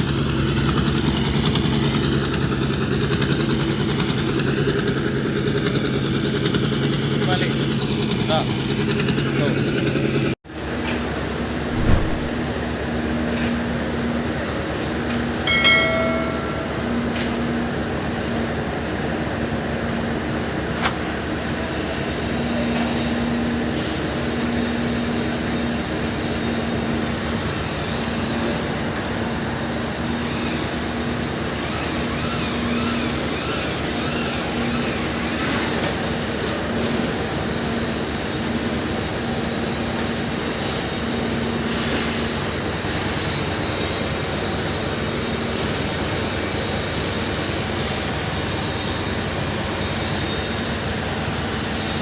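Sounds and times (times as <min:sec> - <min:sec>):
heavy machinery noise: 0:00.0 - 0:52.0
low hum: 0:11.7 - 0:12.4.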